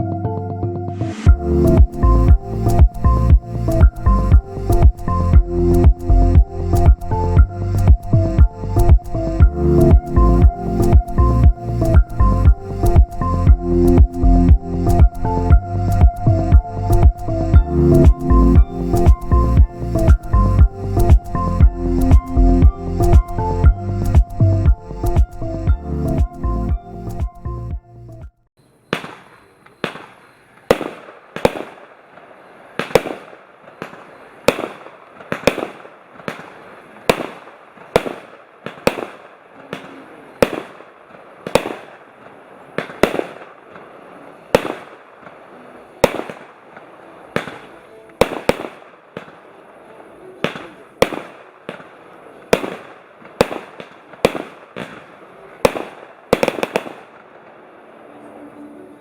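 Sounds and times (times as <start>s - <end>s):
fireworks bangs: 28.9s - 58.2s.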